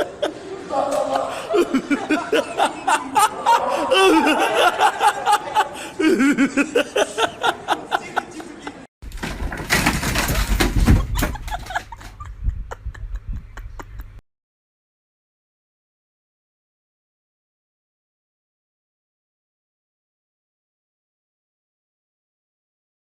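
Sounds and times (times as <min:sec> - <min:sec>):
person laughing: 0:00.0 - 0:08.5, 0:11.0 - 0:14.2.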